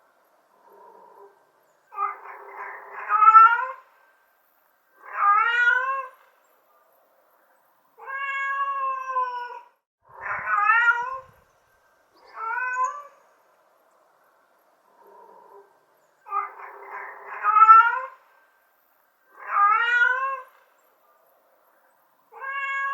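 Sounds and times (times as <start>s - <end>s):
cat meowing: 2.0s - 3.8s, 5.0s - 6.2s, 8.0s - 11.4s, 12.2s - 13.2s, 16.3s - 18.2s, 19.3s - 20.6s, 22.3s - 22.9s.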